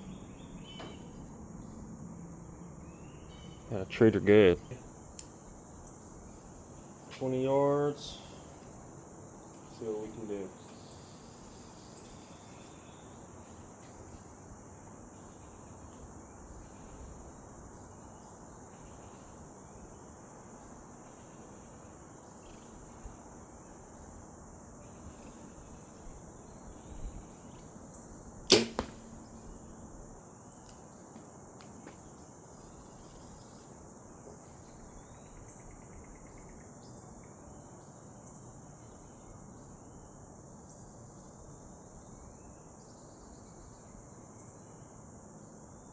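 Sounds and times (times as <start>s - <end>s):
crickets chirring: 0.0s - 45.9s
bow shot snap: 28.5s - 29.6s.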